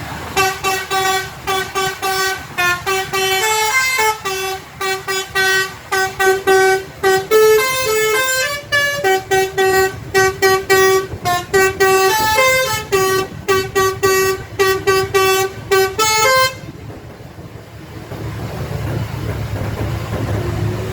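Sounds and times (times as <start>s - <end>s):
bus engine rumbling: 0.0s - 20.9s
bus horn playing a tune: 0.3s - 16.7s.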